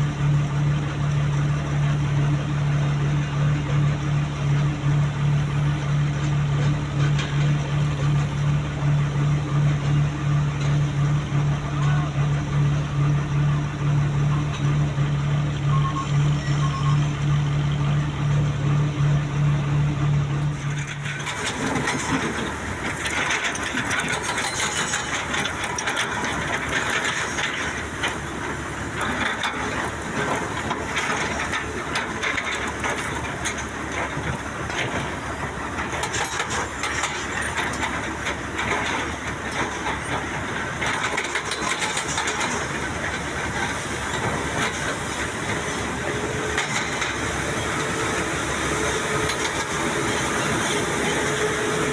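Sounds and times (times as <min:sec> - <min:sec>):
heavy machinery engine humming: 0:00.0 - 0:51.9
machinery clattering: 0:20.4 - 0:51.9.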